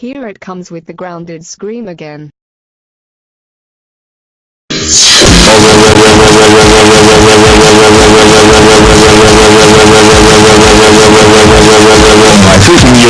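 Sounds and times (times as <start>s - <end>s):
distorted loud scream: 4.7s - 13.0s.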